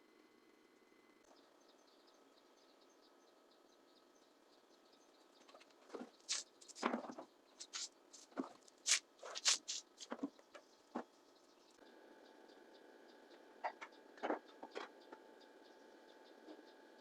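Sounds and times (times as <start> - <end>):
scraping or brushing strokes: 6.3 - 6.9, 7.6 - 10.2.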